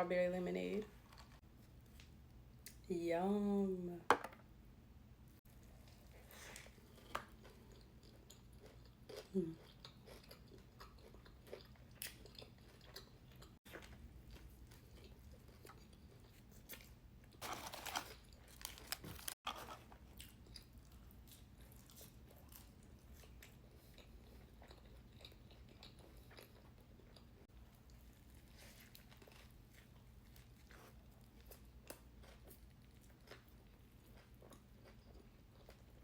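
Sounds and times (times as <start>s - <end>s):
chewing and crunching food: 5.4s - 36.0s.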